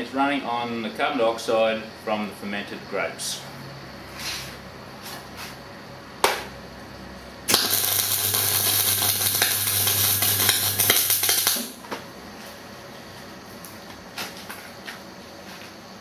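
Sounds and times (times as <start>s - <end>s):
welder arc crackling: 7.5s - 11.8s.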